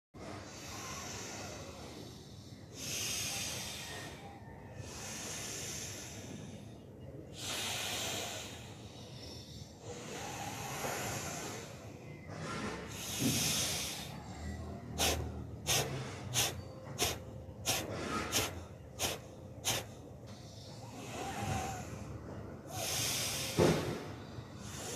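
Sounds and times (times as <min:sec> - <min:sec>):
slow deep breathing: 0:00.2 - 0:24.9
sharp forceful exhalations: 0:12.4 - 0:20.1.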